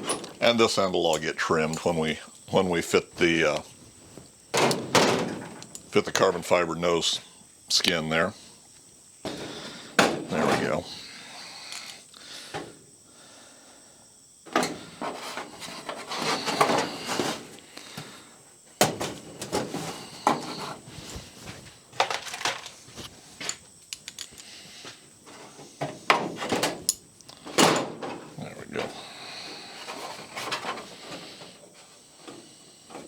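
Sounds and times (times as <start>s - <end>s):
tools knocking and scraping: 0.0s - 0.5s, 14.5s - 17.5s, 18.8s - 24.5s.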